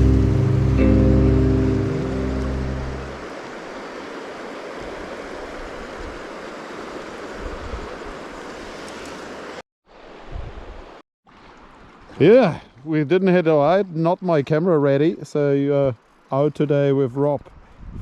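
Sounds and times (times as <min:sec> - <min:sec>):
background music: 0:00.0 - 0:03.2
mountain river rushing: 0:00.0 - 0:10.2.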